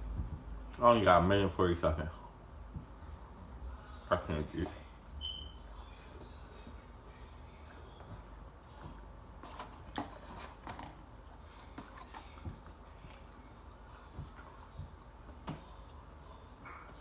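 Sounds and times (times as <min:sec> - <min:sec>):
low steady hum: 0:00.0 - 0:17.0
chewing: 0:09.4 - 0:17.0.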